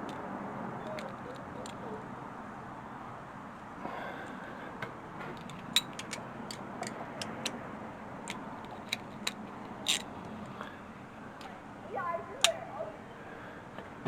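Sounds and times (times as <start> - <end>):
metallic clicks of hand tools: 5.3 - 7.6, 8.2 - 10.1.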